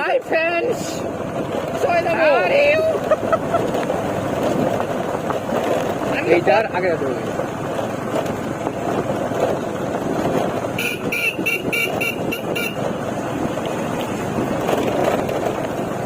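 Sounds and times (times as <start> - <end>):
road and wind noise: 0.0 - 16.0
horn short toots: 10.8 - 12.8.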